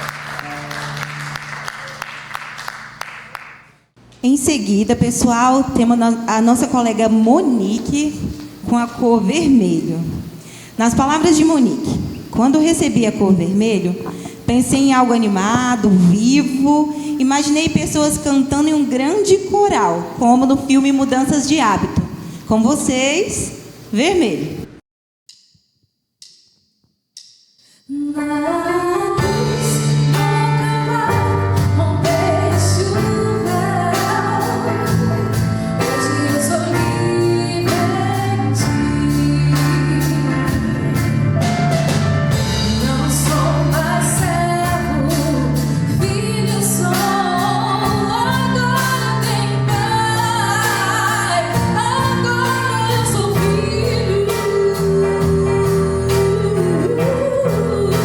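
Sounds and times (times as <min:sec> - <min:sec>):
live band playing: 0:00.0 - 0:03.7, 0:08.4 - 0:17.1, 0:28.7 - 0:58.0
steady drum beat: 0:29.2 - 0:58.0
person singing lead vocals: 0:51.5 - 0:58.0.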